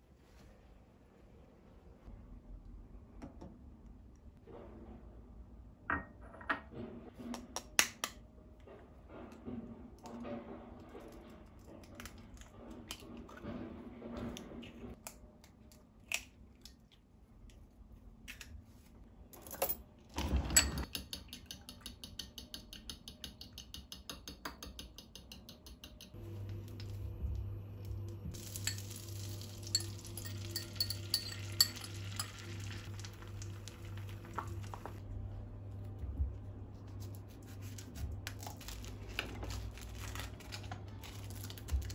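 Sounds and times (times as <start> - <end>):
utensils and dishes clinking: 19.4 - 22.0, 28.3 - 32.9
food sizzling in a hot pan: 28.4 - 34.2
dishes clattering: 29.6 - 32.8.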